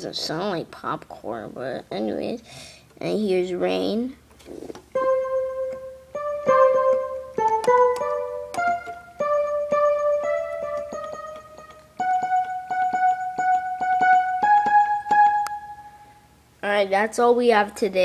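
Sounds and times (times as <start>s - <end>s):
electronic keyboard held notes: 4.9s - 16.3s
sharp clicks like drops: 6.9s - 9.0s.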